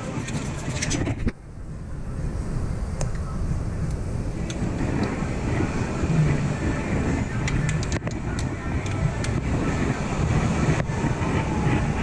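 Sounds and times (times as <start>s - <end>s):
car engine running: 0.0s - 12.0s.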